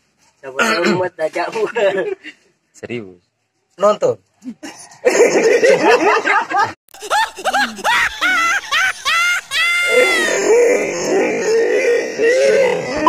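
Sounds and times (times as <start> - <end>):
high voice crying: 7.0 - 13.0.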